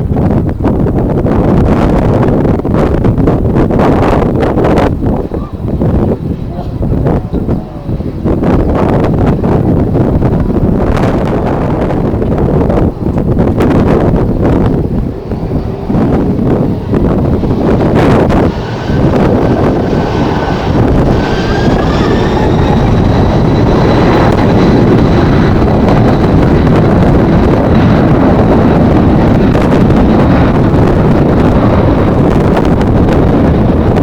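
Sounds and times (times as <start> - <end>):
high engine whine: 0.0 - 34.0
jet engines rumbling: 0.0 - 34.0
wind buffeting microphone: 0.0 - 34.0.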